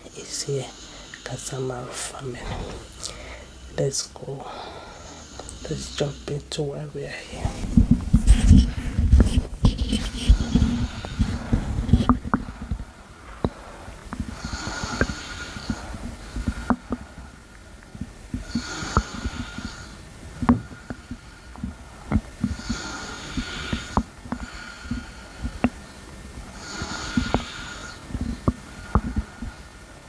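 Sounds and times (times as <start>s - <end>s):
stomach gurgling: 7.5s - 25.8s.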